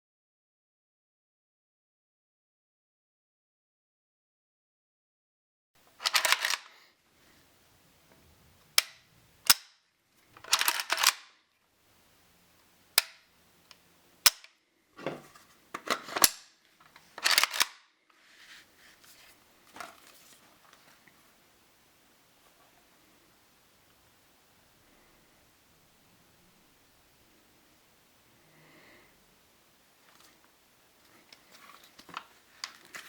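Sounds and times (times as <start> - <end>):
faint handling noise: 5.8 - 8.9, 10.1 - 11.1, 15.0 - 21.5, 30.0 - 33.0
rifle metallic clacks and clicks: 6.0 - 6.7, 10.4 - 11.3, 17.2 - 17.8.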